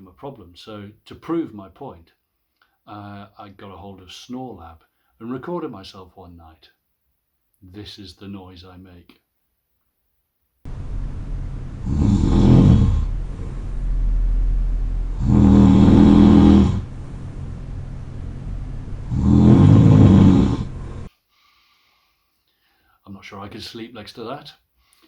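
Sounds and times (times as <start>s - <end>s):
man snoring heavily: 11.7s - 13.4s, 15.1s - 16.9s, 19.1s - 21.1s.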